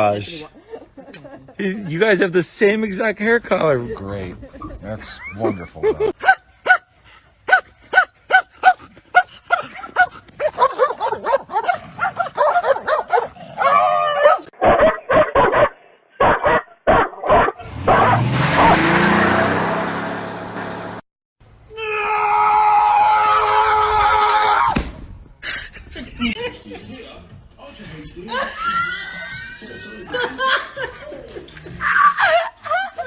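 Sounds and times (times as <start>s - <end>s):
dog barking: 6.2s - 6.9s, 7.5s - 18.2s.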